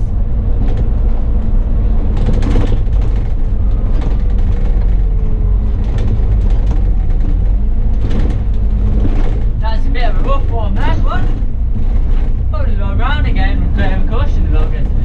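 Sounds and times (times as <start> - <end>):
body knocks and rattles: 0.0 - 12.6
bus engine and road rumble: 0.0 - 15.0.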